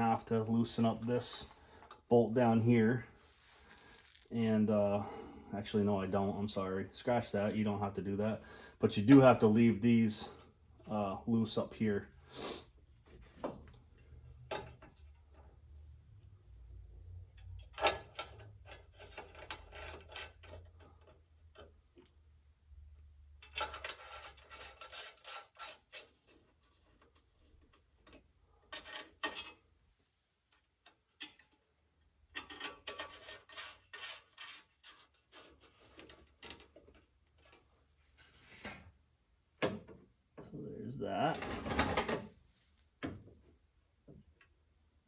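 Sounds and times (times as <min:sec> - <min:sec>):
metal hardware clicking and scraping: 0:17.4 - 0:21.7, 0:23.4 - 0:26.2, 0:27.7 - 0:29.6, 0:32.3 - 0:38.8.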